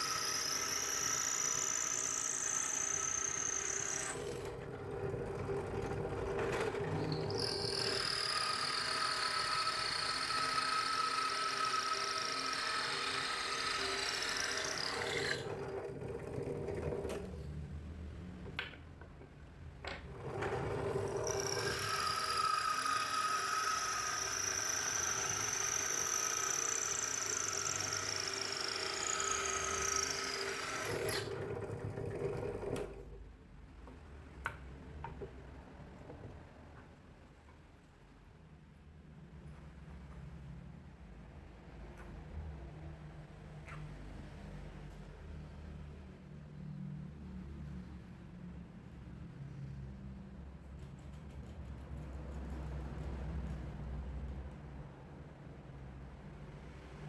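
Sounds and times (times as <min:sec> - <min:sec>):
electric power tool running: 0:00.0 - 0:04.6, 0:06.6 - 0:15.8, 0:20.2 - 0:31.3.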